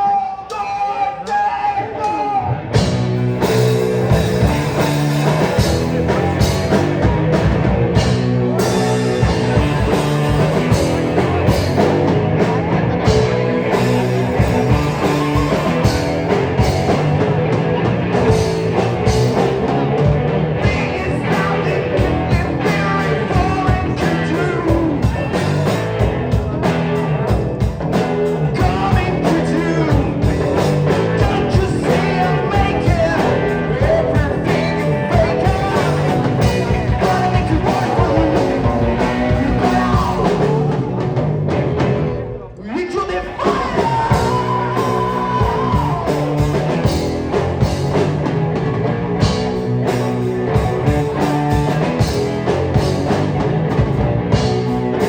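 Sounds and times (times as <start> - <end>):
live rock band playing: 0.0 - 55.0
person singing: 13.6 - 17.0, 20.6 - 27.4, 28.2 - 41.2, 42.6 - 47.0.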